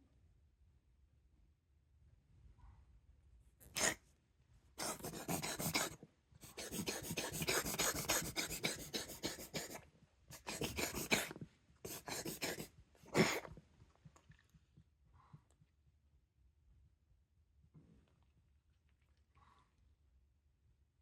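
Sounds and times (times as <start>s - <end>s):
cat reverse sneezing: 3.7s - 4.0s, 4.8s - 13.6s.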